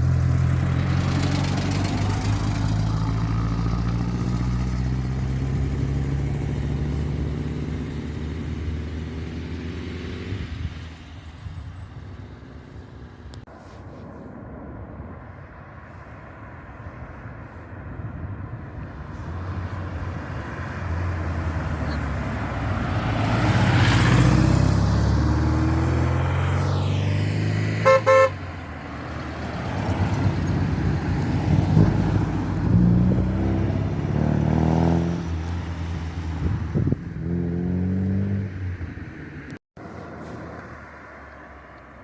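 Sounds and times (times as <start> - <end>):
rally cars accelerating past: 20.5 - 28.2, 31.4 - 38.7
car horn toots: 27.8 - 28.4.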